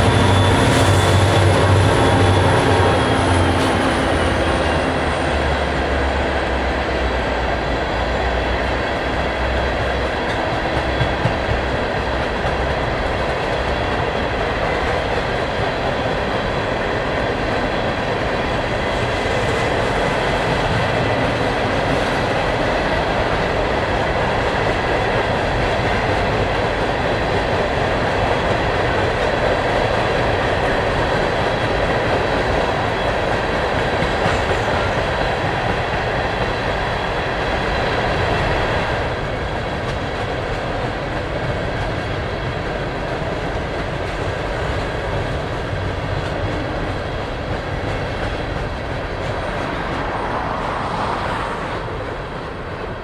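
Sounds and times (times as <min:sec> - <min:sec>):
freight train rumbling on rails: 0:00.0 - 0:53.0.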